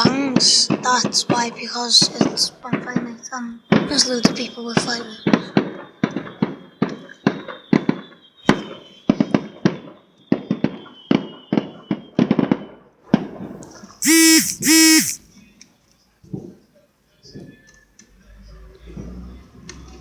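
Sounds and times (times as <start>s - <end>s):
fireworks bangs and crackles: 0.0s - 14.8s
loud steady pitched tones: 14.0s - 15.2s.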